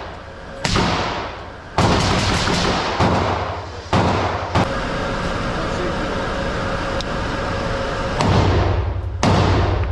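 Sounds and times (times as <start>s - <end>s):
gunshots with echo: 0.6s - 4.7s, 8.2s - 9.9s.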